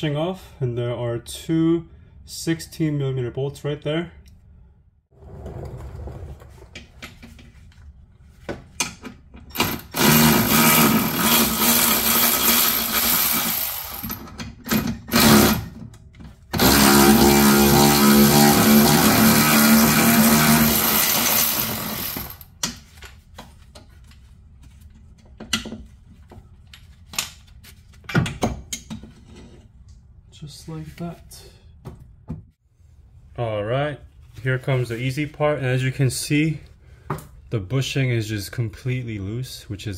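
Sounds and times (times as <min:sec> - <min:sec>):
power tool whining: 0:09.6 - 0:15.8, 0:16.6 - 0:22.4.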